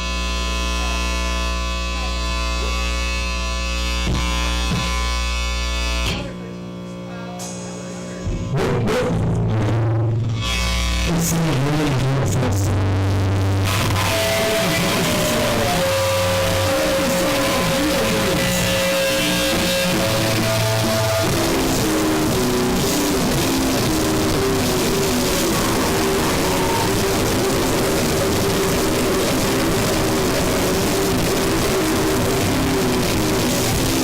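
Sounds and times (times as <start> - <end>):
distorted noise music with guitar: 0.0 - 34.0
long held tone: 22.3 - 32.9.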